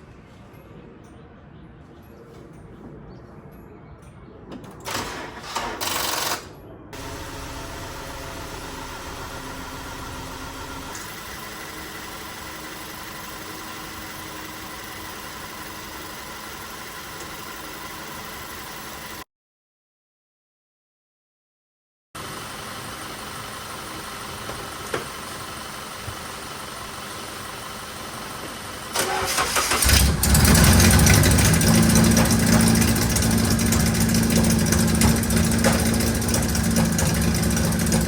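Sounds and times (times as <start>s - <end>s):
car starter cranking: 7.0s - 11.1s, 28.9s - 38.0s
car engine idling: 7.0s - 18.6s, 29.0s - 38.0s.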